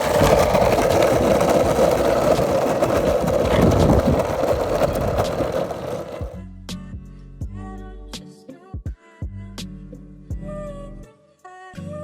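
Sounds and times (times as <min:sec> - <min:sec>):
longboard wheels rumbling on asphalt: 0:00.0 - 0:06.4
music: 0:06.3 - 0:12.0.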